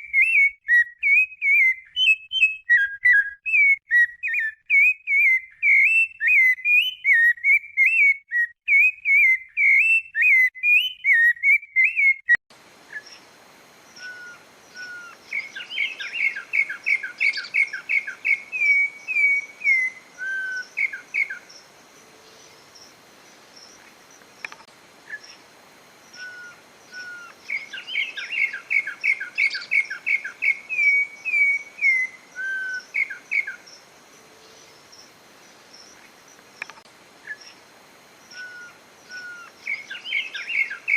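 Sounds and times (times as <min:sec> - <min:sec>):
bird whistled warble: 0:14.0 - 0:21.4, 0:26.2 - 0:33.6, 0:38.3 - 0:40.9.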